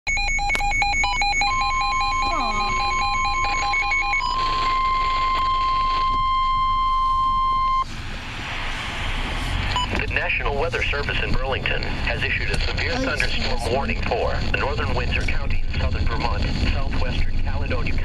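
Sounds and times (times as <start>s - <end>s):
steady alarm tone: 0.1s - 7.9s
warbling alert beeps: 0.2s - 5.0s, 12.8s - 14.0s
radio static hiss: 8.1s - 18.0s.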